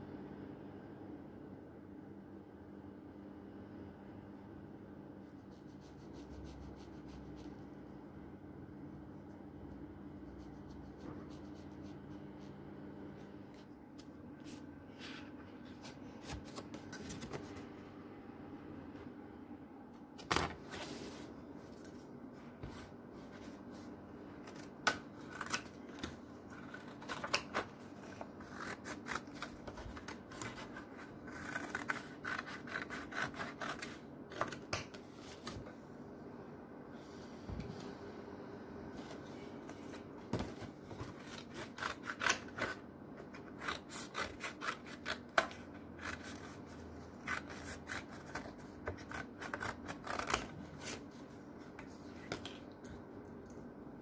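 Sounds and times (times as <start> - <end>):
steady low hum: 0.0 - 54.0
scratchy rubbing: 5.3 - 7.6, 10.2 - 12.5.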